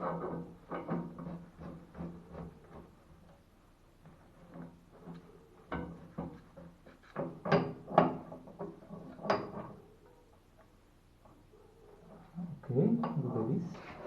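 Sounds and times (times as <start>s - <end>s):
tools knocking and clunking: 0.0s - 3.4s, 4.0s - 9.8s.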